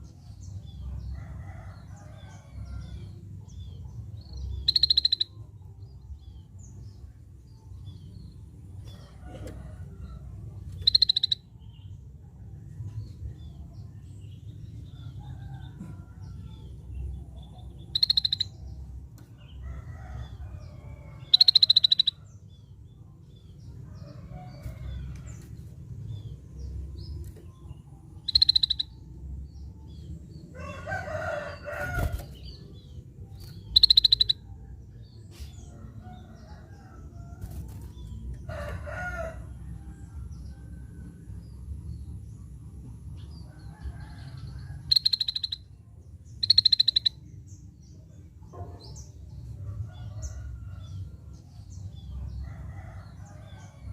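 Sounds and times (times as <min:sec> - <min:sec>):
high-pitched bird calls: 0:04.6 - 0:05.3, 0:10.8 - 0:11.5, 0:17.9 - 0:18.5, 0:21.3 - 0:22.2, 0:28.3 - 0:29.0, 0:33.6 - 0:34.5, 0:44.9 - 0:45.6, 0:46.4 - 0:47.2
steady low rumble: 0:20.2 - 0:30.6, 0:32.2 - 0:43.6.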